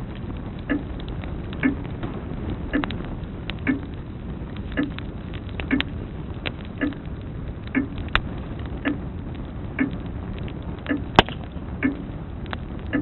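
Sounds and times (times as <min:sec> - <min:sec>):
wood fire crackling and popping: 0:00.0 - 0:13.0
grandfather clock ticking: 0:00.7 - 0:00.9, 0:01.6 - 0:01.8, 0:02.7 - 0:02.9, 0:03.7 - 0:03.9, 0:04.8 - 0:05.0, 0:05.7 - 0:05.9, 0:06.8 - 0:07.0, 0:07.8 - 0:08.0, 0:09.8 - 0:10.0, 0:10.9 - 0:11.1, 0:11.8 - 0:12.0.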